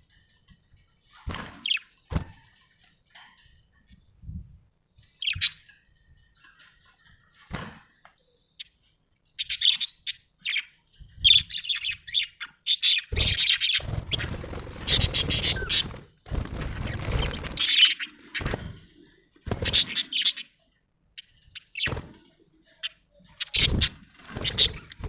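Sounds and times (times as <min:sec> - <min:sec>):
budgerigar chirping: 0:11.3 - 0:15.9.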